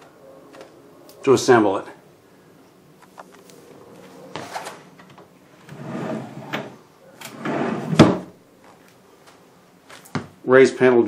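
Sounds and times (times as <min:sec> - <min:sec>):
wooden drawer sliding: 0:05.6 - 0:08.3
drawer knocking shut: 0:07.9 - 0:08.3.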